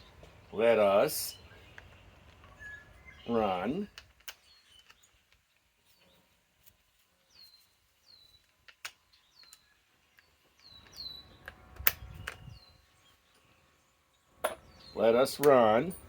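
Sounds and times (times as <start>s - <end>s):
small bird chirping: 1.3s - 6.4s, 7.0s - 16.0s
sharp clicks: 10.2s - 12.6s.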